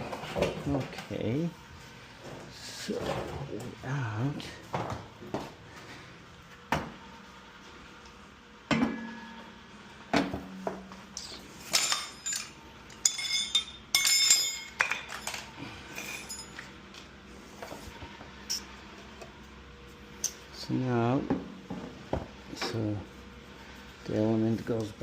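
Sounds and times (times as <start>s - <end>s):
metal tools knocking and clinking: 11.2s - 16.7s.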